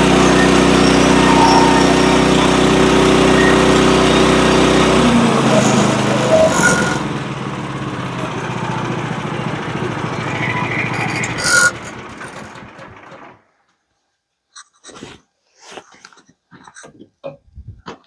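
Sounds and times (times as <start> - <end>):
small gas engine running: 0.0 - 13.5.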